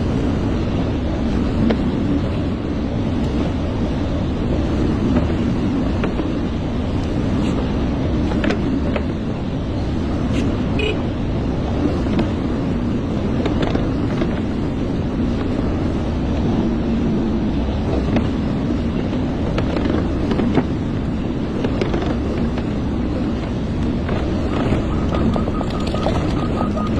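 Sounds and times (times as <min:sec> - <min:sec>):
thin steady whine: 0:00.0 - 0:26.9
diesel engine running: 0:17.4 - 0:26.9.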